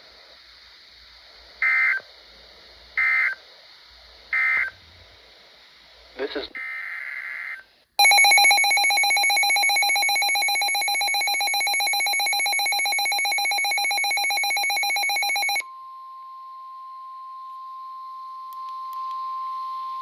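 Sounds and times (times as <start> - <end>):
pulsing electronic alarm tone: 7.1 - 15.6
steady warning alarm tone: 8.0 - 15.6.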